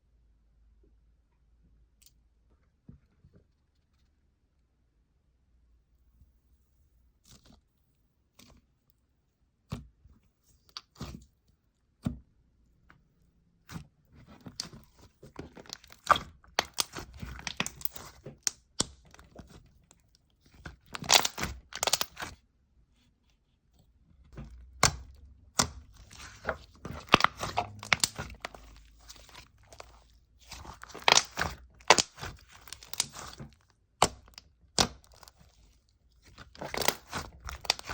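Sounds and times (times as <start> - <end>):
slime crackling and popping: 14.3 - 22.4, 24.4 - 37.9.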